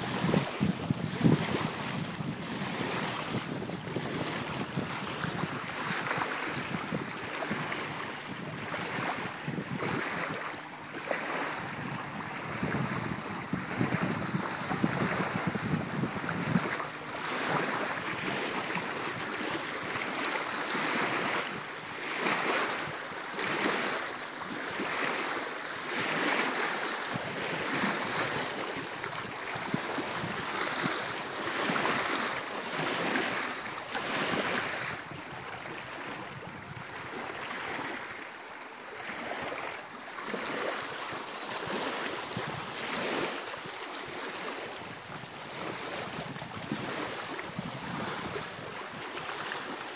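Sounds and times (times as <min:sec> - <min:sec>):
wind buffeting microphone: 0:00.0 - 0:21.6, 0:27.1 - 0:37.9, 0:44.8 - 0:49.2
water splashing around a kayak: 0:00.0 - 0:49.9.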